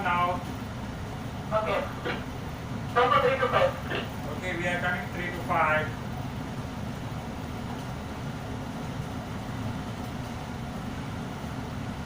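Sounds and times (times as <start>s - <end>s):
ship engine rumbling: 0.0s - 6.2s.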